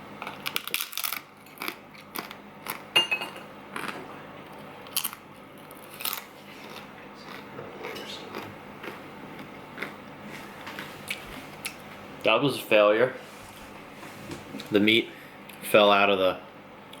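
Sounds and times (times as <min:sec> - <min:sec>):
taco shell crunching: 0:00.3 - 0:02.9.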